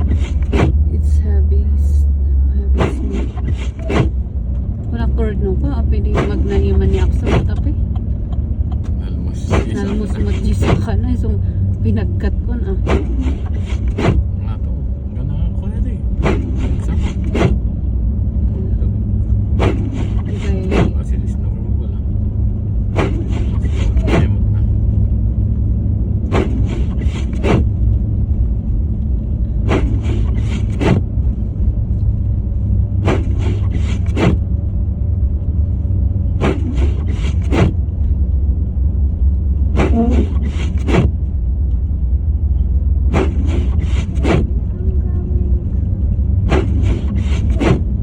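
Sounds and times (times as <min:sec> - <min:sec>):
car interior rumble: 0:00.0 - 0:48.0
quick scraping clicks: 0:29.7 - 0:31.0, 0:46.5 - 0:47.9.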